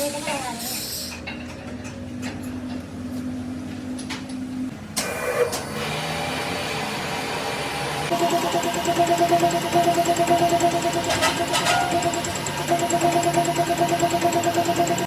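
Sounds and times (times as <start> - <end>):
steady motor hum: 2.1 - 15.0
machine running: 5.0 - 15.0.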